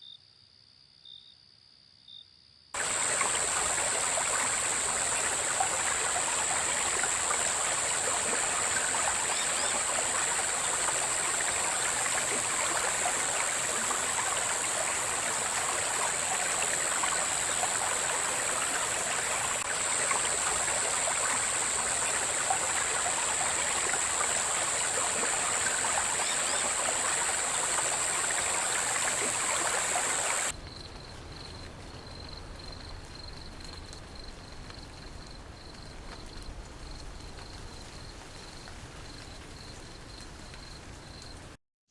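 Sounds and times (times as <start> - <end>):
running water: 2.8 - 30.5.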